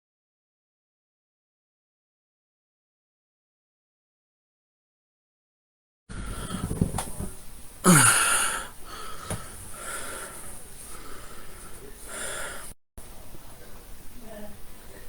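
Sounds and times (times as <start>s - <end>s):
person breathing: 6.1s - 7.0s, 7.8s - 12.8s.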